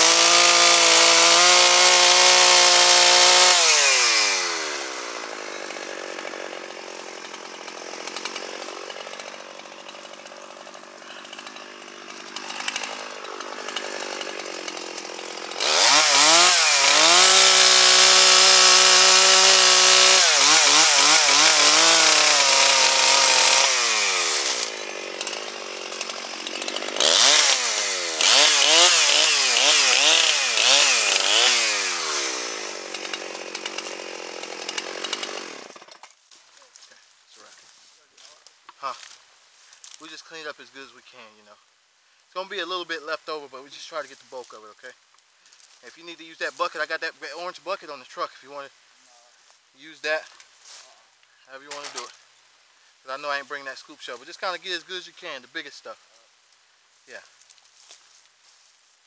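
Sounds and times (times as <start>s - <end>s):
chainsaw engine revving: 0.0s - 36.0s, 51.7s - 52.1s.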